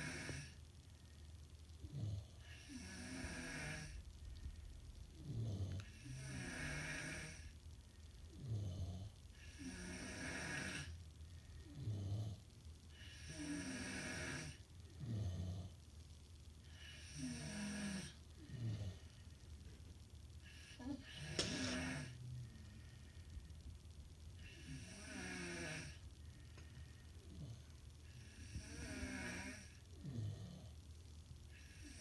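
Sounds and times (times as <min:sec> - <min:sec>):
rattling snore: 0:01.8 - 0:04.0, 0:05.2 - 0:07.6, 0:08.3 - 0:11.0, 0:13.0 - 0:15.8, 0:16.8 - 0:19.0, 0:20.4 - 0:22.4, 0:24.4 - 0:26.0, 0:27.3 - 0:30.8.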